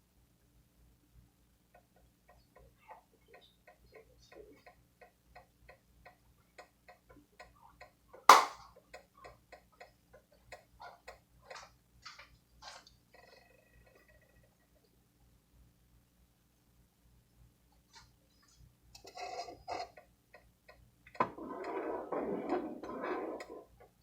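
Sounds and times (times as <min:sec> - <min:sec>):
loud knock: 0:08.3 - 0:08.6.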